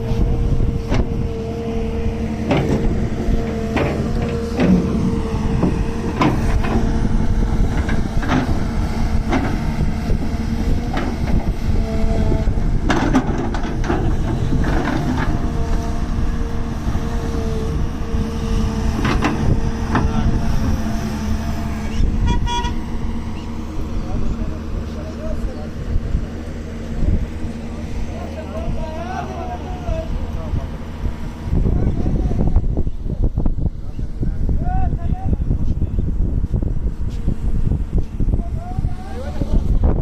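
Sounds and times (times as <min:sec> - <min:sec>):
excavator diesel engine hum: 0:00.0 - 0:40.0
metallic clanks and knocks: 0:02.4 - 0:05.0, 0:05.6 - 0:06.9, 0:12.9 - 0:15.4.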